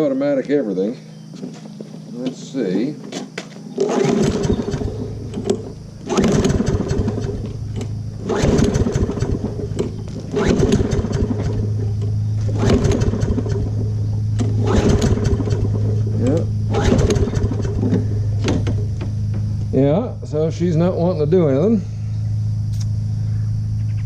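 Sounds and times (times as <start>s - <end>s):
mower recoil starter pulls: 3.8s - 13.8s, 14.4s - 19.0s
engine cranking without catching: 3.8s - 19.0s.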